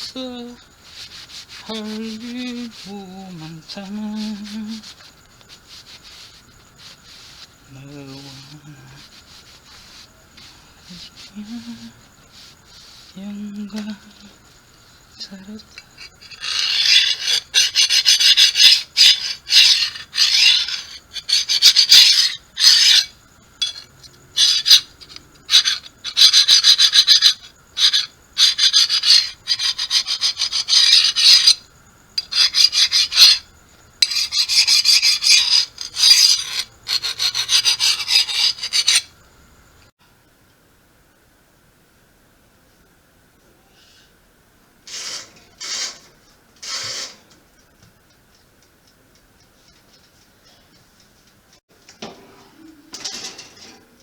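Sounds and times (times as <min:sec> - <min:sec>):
rapid rasping strokes: 0:00.0 - 0:14.2, 0:15.7 - 0:31.6, 0:32.2 - 0:33.4, 0:34.0 - 0:39.1.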